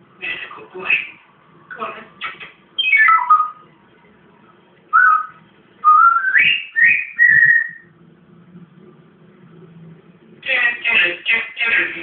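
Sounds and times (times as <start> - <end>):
parrot whistling: 2.8 - 3.6, 4.9 - 7.9.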